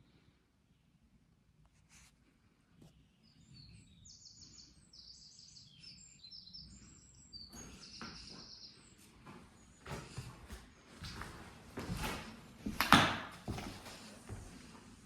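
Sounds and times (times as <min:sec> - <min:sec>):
small birds chirping: 0:02.7 - 0:11.6.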